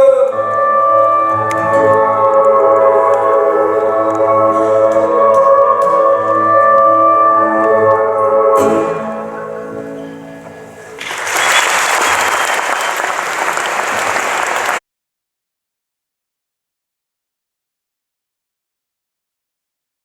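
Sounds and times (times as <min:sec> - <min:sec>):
live band sustained notes: 0:00.0 - 0:14.8
audience applause: 0:11.0 - 0:14.8.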